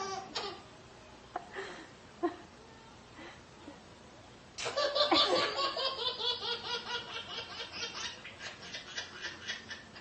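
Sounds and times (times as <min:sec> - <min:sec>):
baby laughing: 0:00.0 - 0:00.6, 0:04.6 - 0:10.0.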